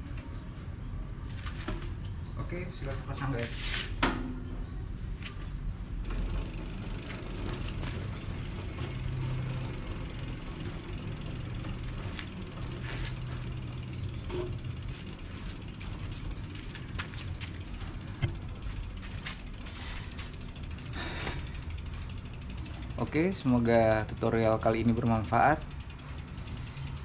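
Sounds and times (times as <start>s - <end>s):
bike freehub ratcheting: 6.0s - 27.0s.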